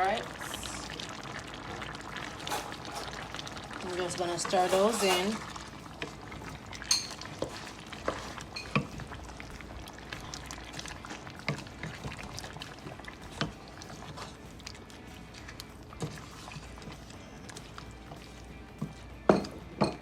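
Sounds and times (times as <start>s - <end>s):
curry bubbling: 0.0s - 20.0s
spoon stirring wet food: 0.9s - 20.0s
spoon knocking against pot: 19.3s - 20.0s.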